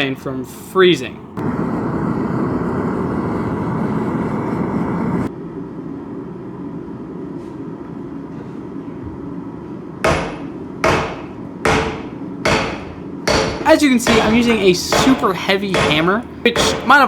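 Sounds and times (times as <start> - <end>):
burner hiss: 1.4 - 5.3
steady rush of noise: 1.4 - 5.6
hammer blows on steel: 10.1 - 17.0.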